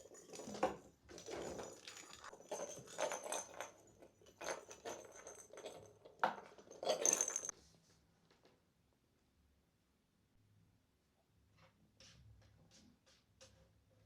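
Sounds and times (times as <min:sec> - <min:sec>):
faint jingling: 0:00.0 - 0:07.5
kittens playing with toys: 0:00.0 - 0:07.5.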